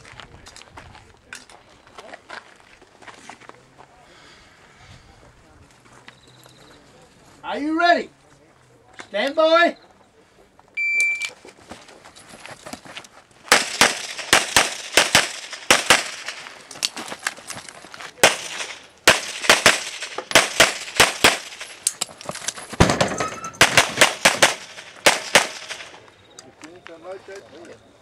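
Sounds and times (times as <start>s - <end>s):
pistol shots: 13.5s - 16.5s, 18.2s - 22.0s, 22.8s - 26.0s.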